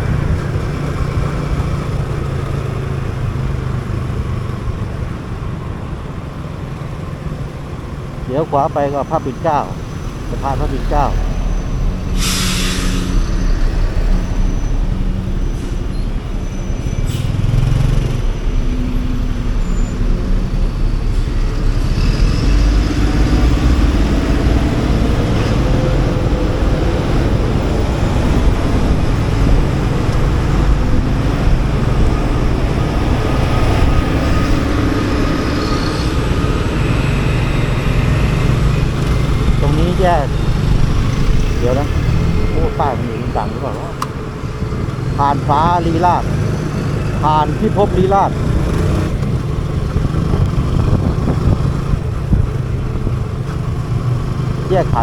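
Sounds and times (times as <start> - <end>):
traffic rumble: 0.0 - 55.0
motorcycle engine running: 46.4 - 55.0.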